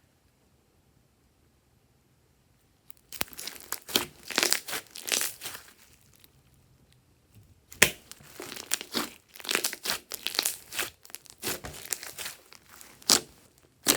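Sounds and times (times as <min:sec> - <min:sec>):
slime squished by hand: 0:02.9 - 0:06.3, 0:07.7 - 0:13.9.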